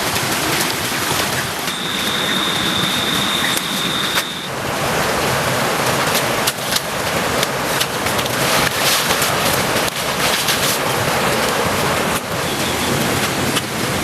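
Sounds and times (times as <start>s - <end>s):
heavy rain pouring: 0.0s - 14.0s.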